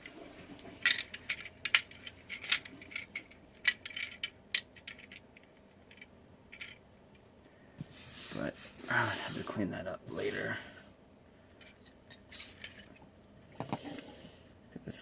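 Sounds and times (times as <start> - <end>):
plastic pieces clicking and rattling: 0.8 - 6.8.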